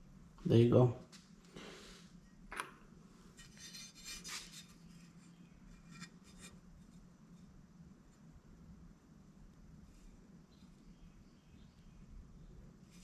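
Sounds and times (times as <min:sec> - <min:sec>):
faint rubbing and scraping: 0:03.2 - 0:08.2.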